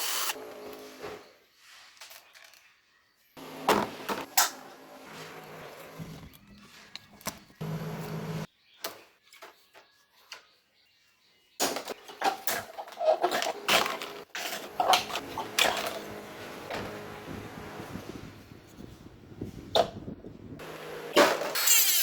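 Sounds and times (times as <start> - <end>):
motor-like hum: 7.3 - 8.5, 14.4 - 19.5, 20.6 - 21.2.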